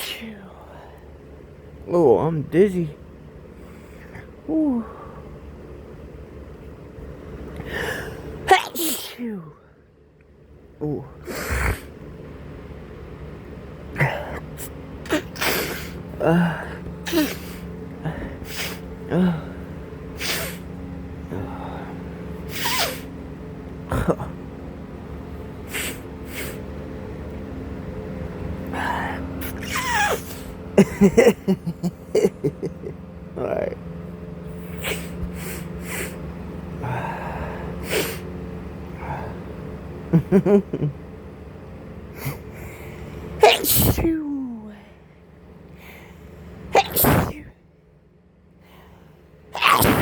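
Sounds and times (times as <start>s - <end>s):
man sneezing: 0.0s - 0.3s, 7.8s - 9.4s, 14.0s - 19.4s, 22.5s - 23.1s, 43.4s - 44.2s, 46.8s - 47.5s, 49.6s - 50.0s
man sniffing: 11.2s - 12.0s, 14.0s - 19.4s, 20.2s - 20.7s, 22.5s - 23.1s, 25.7s - 26.6s, 34.5s - 36.2s, 36.9s - 38.3s, 42.2s - 44.1s, 46.8s - 47.5s, 49.6s - 50.0s
nasal sniffs and snorts: 15.1s - 16.0s, 20.2s - 20.6s, 22.5s - 23.1s, 34.5s - 36.2s, 46.8s - 47.3s.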